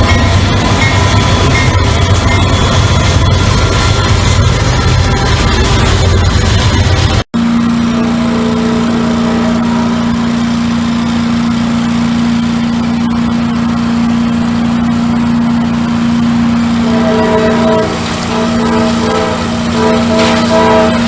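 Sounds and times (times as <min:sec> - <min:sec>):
diesel locomotive passing: 0:00.0 - 0:21.0
locomotive air horn chord: 0:07.4 - 0:21.0.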